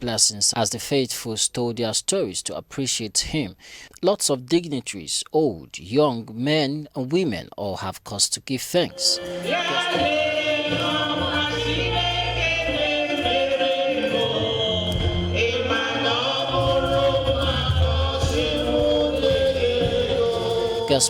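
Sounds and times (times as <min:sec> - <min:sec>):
choir singing gospel: 0:08.9 - 0:21.0
low bass accompaniment: 0:16.5 - 0:21.0.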